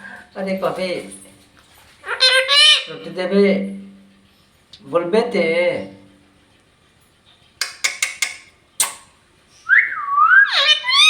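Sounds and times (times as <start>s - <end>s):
sharp clicks: 7.6s - 9.1s
parrot whistling: 7.6s - 11.0s.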